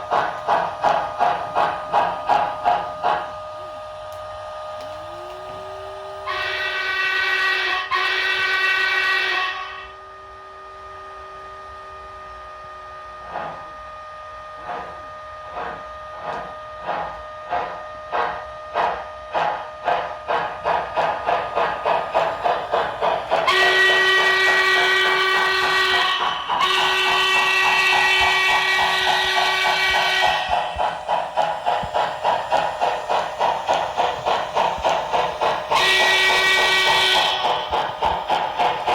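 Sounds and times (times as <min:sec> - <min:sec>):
steam locomotive exhaust chuffs: 0:00.0 - 0:38.9
steam whistle blasts: 0:06.2 - 0:10.2, 0:23.4 - 0:30.5, 0:35.8 - 0:37.5.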